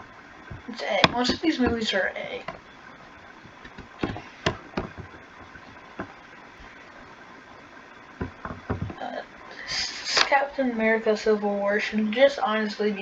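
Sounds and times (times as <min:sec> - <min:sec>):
faint steady hiss: 0:00.0 - 0:13.0
sharp clicks and knocks: 0:00.4 - 0:06.2, 0:08.2 - 0:09.0.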